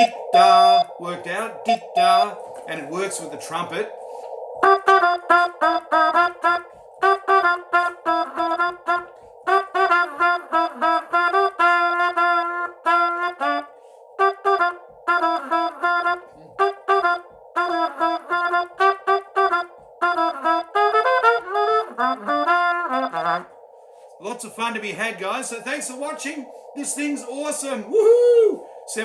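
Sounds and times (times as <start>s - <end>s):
trumpet staccato notes: 0.0s - 0.9s, 4.6s - 23.5s.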